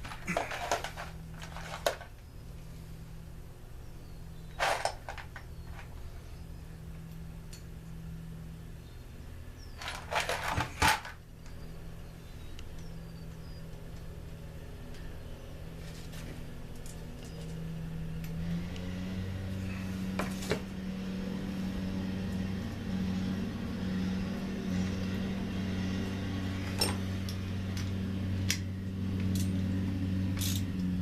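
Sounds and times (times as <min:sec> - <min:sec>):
low mechanical hum: 0:00.0 - 0:31.0
small metal parts clicking: 0:29.2 - 0:29.6, 0:30.3 - 0:30.9.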